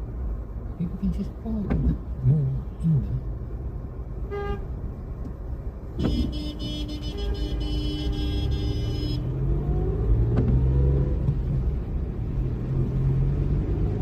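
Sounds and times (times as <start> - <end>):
road rumble: 0.0 - 14.0
car horn: 4.2 - 4.8, 6.0 - 9.4
car engine accelerating: 9.3 - 14.0.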